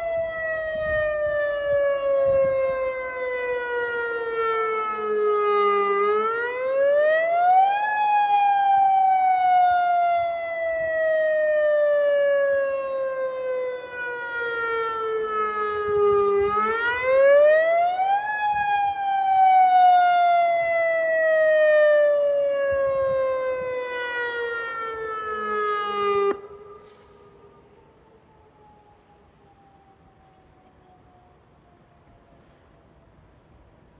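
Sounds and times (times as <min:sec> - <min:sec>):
electronic warning siren wail: 0:00.0 - 0:32.8.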